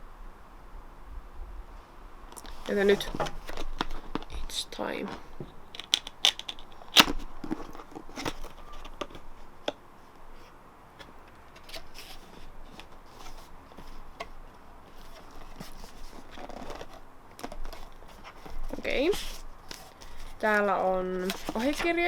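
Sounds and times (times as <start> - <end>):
rustling and handling: 2.3 - 22.0
cardboard packaging tearing: 5.8 - 9.2, 11.6 - 14.2, 14.9 - 22.0.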